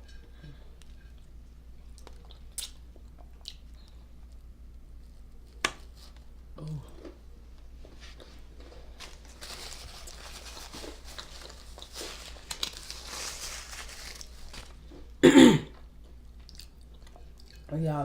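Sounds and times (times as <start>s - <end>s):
paper wrapper crinkling: 8.9s - 15.0s
person burping: 15.2s - 15.7s.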